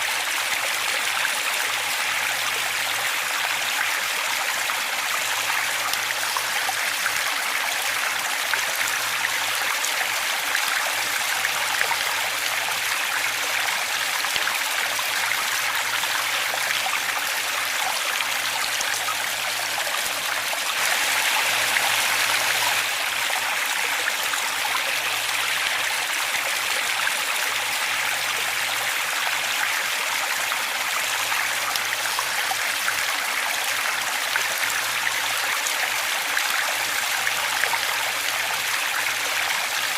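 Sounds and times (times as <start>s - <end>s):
waterfall rushing: 15.8s - 28.9s.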